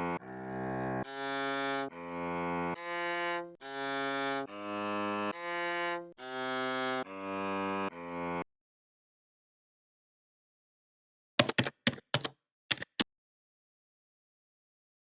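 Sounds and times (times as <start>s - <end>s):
bowed cello melody: 0.0s - 8.4s.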